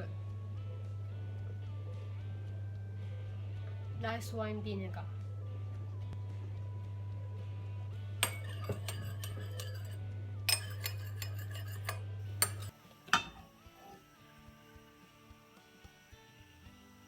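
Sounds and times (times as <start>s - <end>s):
steady low hum: 5.1s - 16.6s
spoon clinking against dish: 8.2s - 13.5s.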